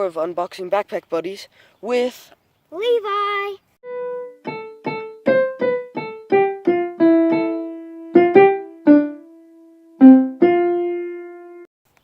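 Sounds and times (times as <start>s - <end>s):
piano-like keyboard melody: 3.8s - 11.7s.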